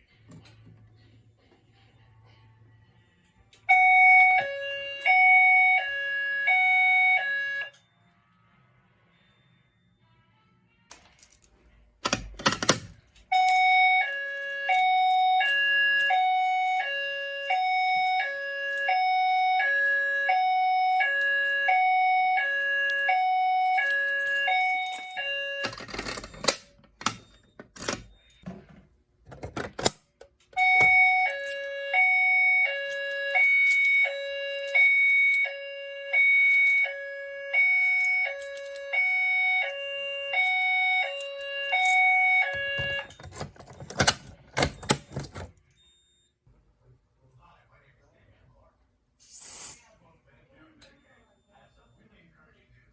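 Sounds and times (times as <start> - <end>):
two-tone fire alarm signal: 3.6 - 10.2, 13.3 - 28.4, 30.5 - 46.4.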